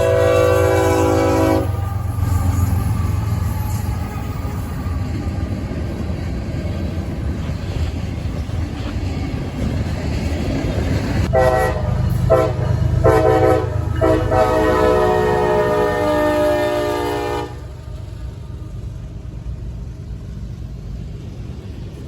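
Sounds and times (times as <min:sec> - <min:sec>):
locomotive air horn blasts: 0:00.0 - 0:02.7, 0:11.3 - 0:17.9.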